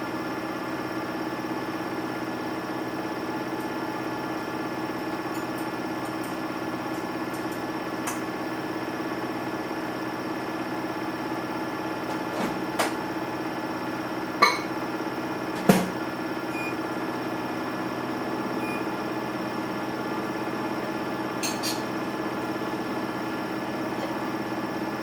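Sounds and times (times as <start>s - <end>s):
washing machine motor hum: 1.5s - 25.0s.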